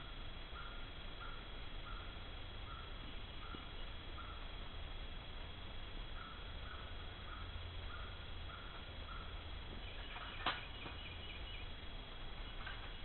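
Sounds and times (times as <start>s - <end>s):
faint bird calls: 0.0s - 4.6s, 6.1s - 13.0s
high bird chirps: 6.2s - 11.8s.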